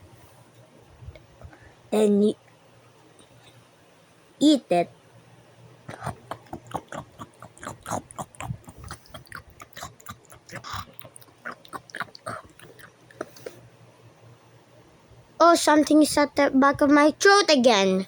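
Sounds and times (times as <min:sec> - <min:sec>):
snorty grunts: 0:05.9 - 0:12.9
wet mouth-smacking and chomping: 0:05.9 - 0:13.6.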